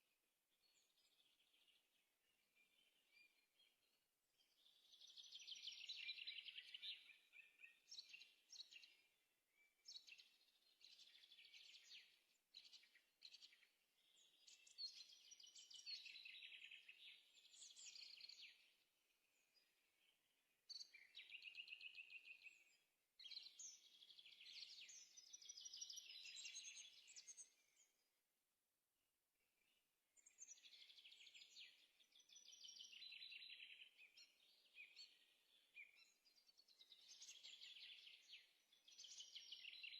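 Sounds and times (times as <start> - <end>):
faint bird song trills and chirps: 0.0 - 39.9.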